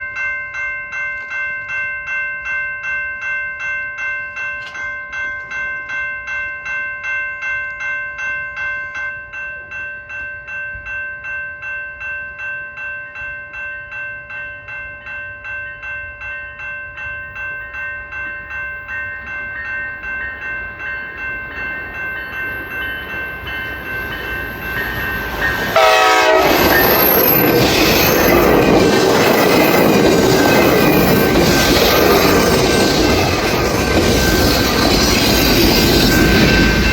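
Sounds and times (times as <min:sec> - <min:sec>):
level crossing bell ringing: 0:00.0 - 0:36.9
train passing close: 0:18.8 - 0:36.9
train horn: 0:25.7 - 0:26.9.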